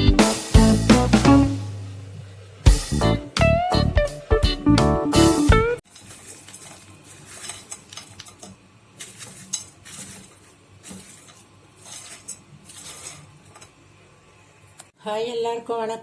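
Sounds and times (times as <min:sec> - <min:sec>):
dishes and utensils clinking: 0:05.8 - 0:13.8.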